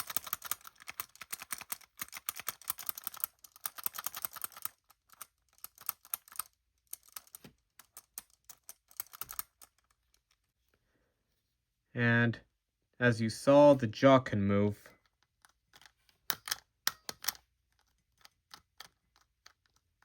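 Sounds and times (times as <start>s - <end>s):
plastic toy clicking and rattling: 0.0s - 10.4s, 14.9s - 20.0s.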